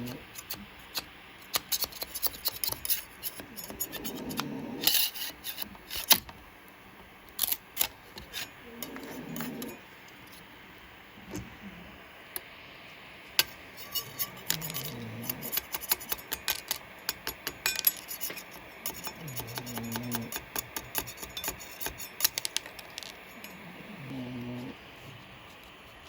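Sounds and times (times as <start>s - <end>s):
low voice murmurs: 3.6s - 4.9s, 8.6s - 9.8s, 14.0s - 15.6s, 19.2s - 20.3s, 23.4s - 24.9s.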